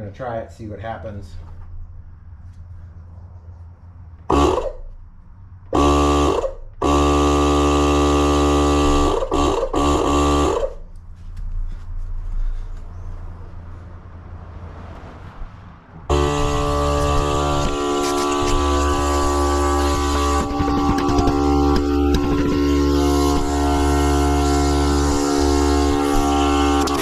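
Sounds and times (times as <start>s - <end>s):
air compressor running: 5.8s - 10.8s, 16.1s - 27.0s.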